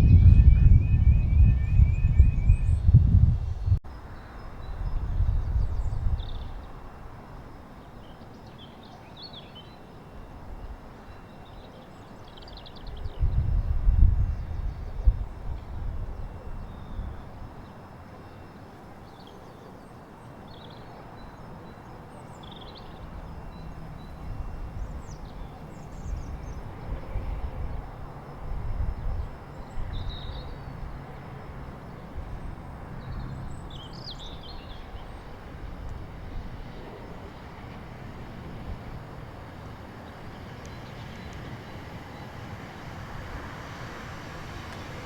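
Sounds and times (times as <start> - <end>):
bird chirps: 0.0 - 3.8
steady low rumble: 0.0 - 3.9.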